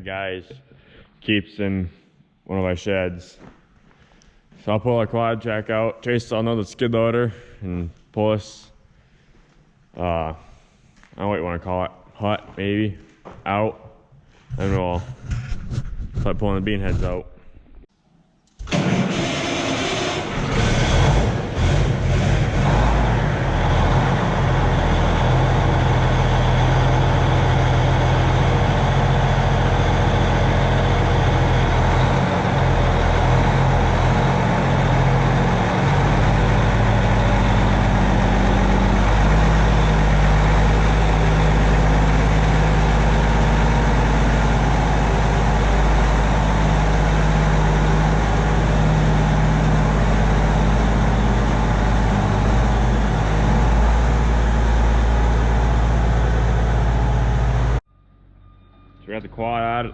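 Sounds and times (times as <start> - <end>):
heavy diesel engine running: 18.7 - 57.8.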